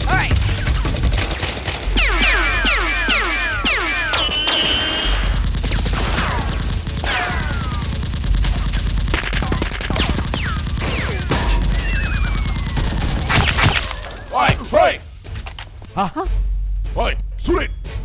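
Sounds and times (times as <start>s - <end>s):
rapid automatic gunfire: 4.6s - 13.9s.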